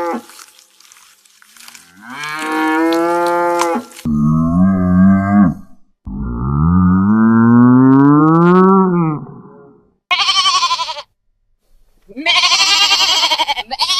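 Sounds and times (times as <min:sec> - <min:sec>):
cows mooing: 0:01.7 - 0:10.8.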